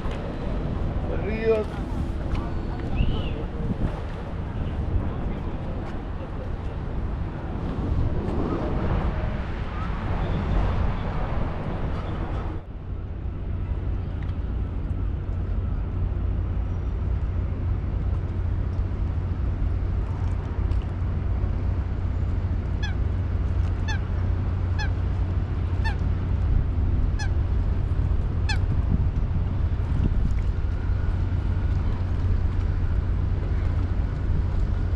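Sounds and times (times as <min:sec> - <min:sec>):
steady low rumble: 0:00.0 - 0:34.9.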